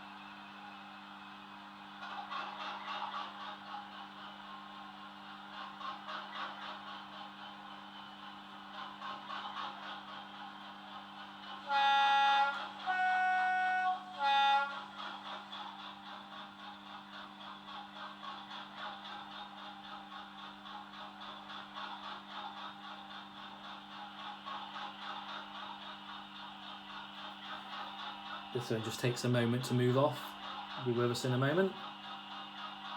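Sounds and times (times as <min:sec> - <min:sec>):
model train diesel idling sound: 0:07.9 - 0:32.9
two-tone train horn: 0:11.6 - 0:15.2.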